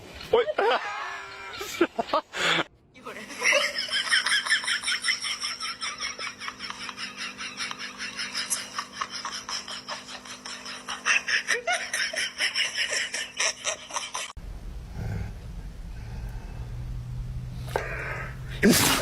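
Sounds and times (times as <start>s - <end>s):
person laughing hard: 0.3s - 2.7s, 3.4s - 14.4s.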